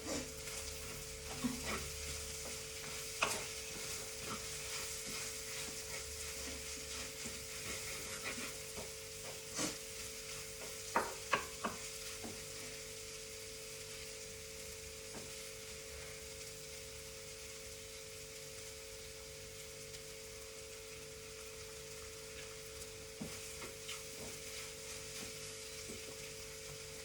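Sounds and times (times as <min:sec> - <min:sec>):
food sizzling in a frying pan: 0:00.0 - 0:27.0
spatula knocking against pan: 0:01.3 - 0:05.8, 0:10.6 - 0:12.4.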